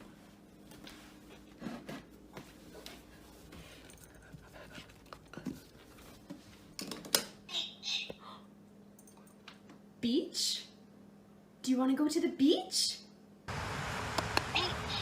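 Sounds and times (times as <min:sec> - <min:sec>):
dog panting: 0:03.1 - 0:06.0.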